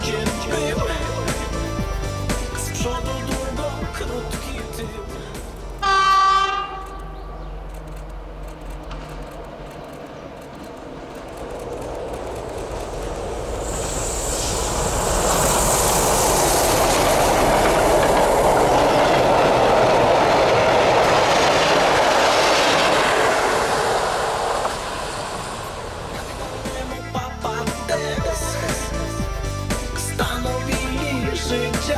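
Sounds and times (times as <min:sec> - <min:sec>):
diesel train passing: 0:00.0 - 0:31.9.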